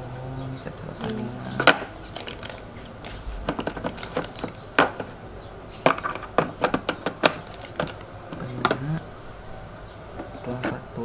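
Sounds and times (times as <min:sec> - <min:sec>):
metal parts clicking and clinking: 0:01.0 - 0:05.1, 0:05.7 - 0:08.8.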